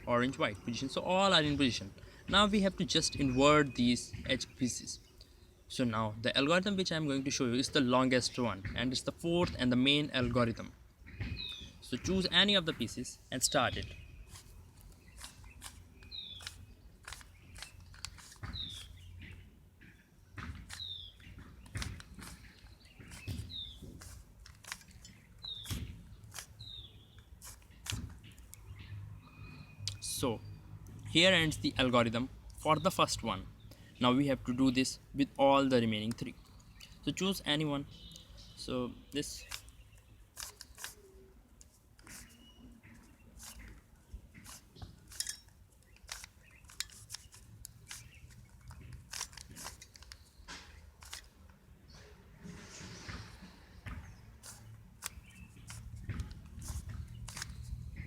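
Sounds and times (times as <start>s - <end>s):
puzzle cube turning clicks: 13.8s - 19.1s, 20.6s - 28.7s, 39.2s - 43.8s, 44.4s - 51.6s, 54.4s - 58.0s.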